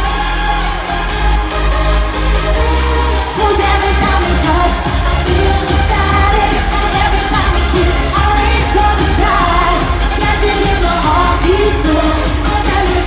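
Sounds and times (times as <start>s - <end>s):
eurodance pop through club speakers: 3.4s - 13.0s.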